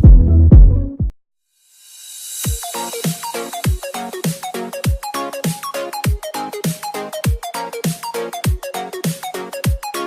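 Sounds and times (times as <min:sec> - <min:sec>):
deep kick drum: 0:00.0 - 0:01.1.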